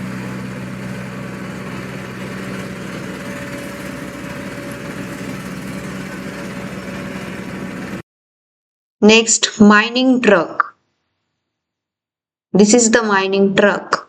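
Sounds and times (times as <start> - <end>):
road roller engine running: 0.0 - 8.0.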